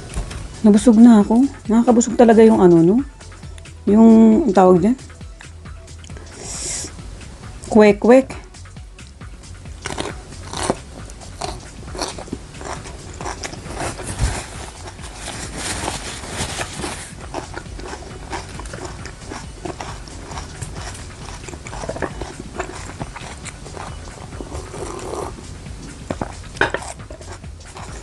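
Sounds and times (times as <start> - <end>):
wet mouth clicks: 9.0 - 9.2, 9.8 - 13.7, 17.3 - 28.0
close chewing and crunching: 9.0 - 28.0.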